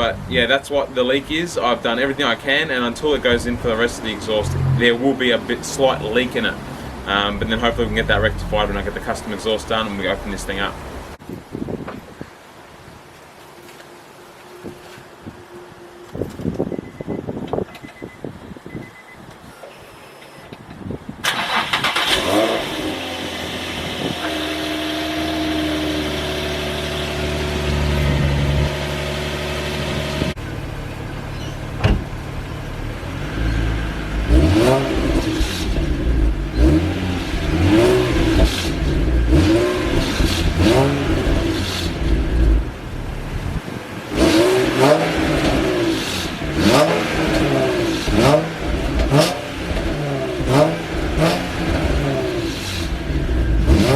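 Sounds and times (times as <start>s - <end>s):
car engine idling: 0.0s - 11.2s, 21.4s - 43.7s, 45.2s - 53.9s
car engine revving in blips: 2.9s - 11.2s, 21.2s - 53.9s.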